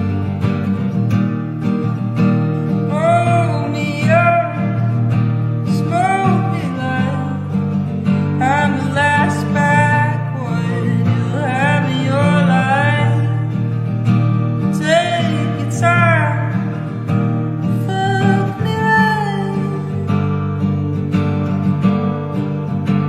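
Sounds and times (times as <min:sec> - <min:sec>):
strummed acoustic guitar: 0:00.0 - 0:23.0.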